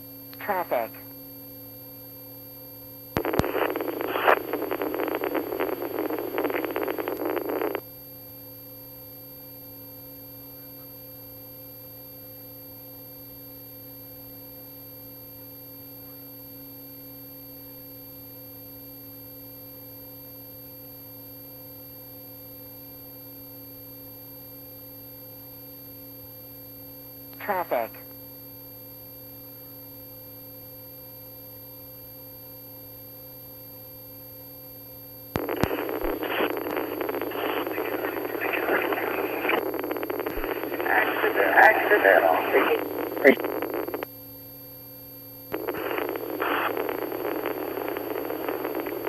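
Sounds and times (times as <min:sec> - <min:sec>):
crackly radio static: 0:00.0 - 0:01.1, 0:03.2 - 0:07.9, 0:27.4 - 0:28.1, 0:35.4 - 0:44.1, 0:45.5 - 0:49.0
electrical hum with faint tones: 0:00.0 - 0:18.2, 0:24.4 - 0:30.5, 0:35.3 - 0:49.0
radio key-up click: 0:03.2 - 0:07.8, 0:35.4 - 0:44.0.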